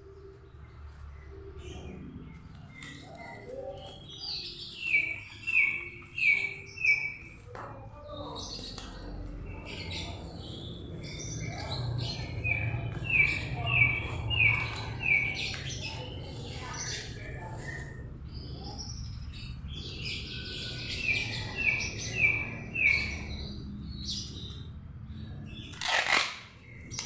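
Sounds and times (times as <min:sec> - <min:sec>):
rustling: 0:25.7 - 0:27.0.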